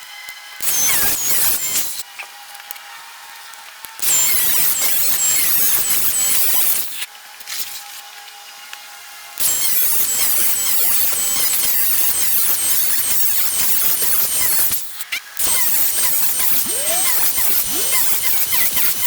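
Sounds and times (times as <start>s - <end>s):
abrasive wheel cutting sheet steel: 0.6s - 2.0s, 4.0s - 7.7s, 9.4s - 19.0s.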